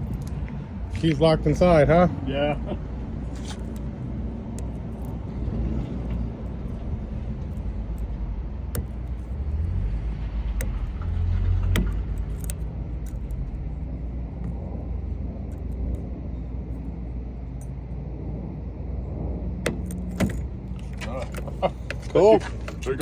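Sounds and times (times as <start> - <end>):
vehicle engine rumbling: 0.0 - 23.0
sharp clicks and taps: 8.7 - 9.3.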